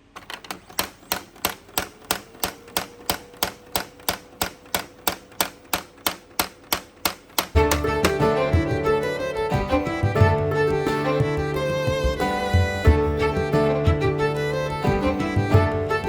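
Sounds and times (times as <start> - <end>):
sharp evenly spaced clicks: 0.0 - 16.0
music: 7.6 - 16.0.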